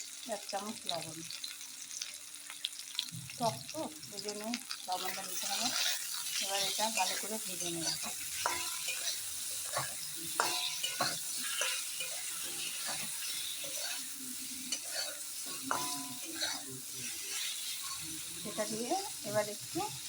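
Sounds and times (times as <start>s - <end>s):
food sizzling in a pan: 0.0s - 20.0s
spatula scraping and knocking pan: 5.3s - 18.8s.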